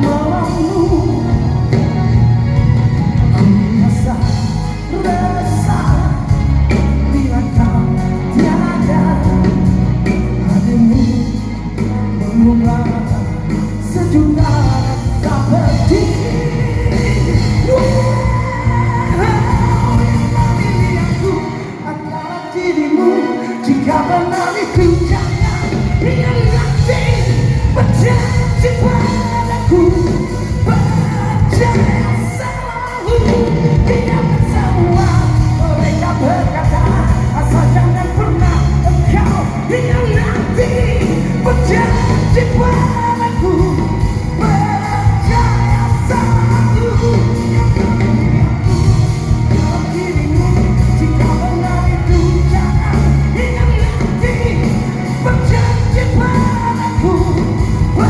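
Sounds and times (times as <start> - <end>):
person singing: 0.0 - 58.0
rock band playing live: 0.0 - 58.0.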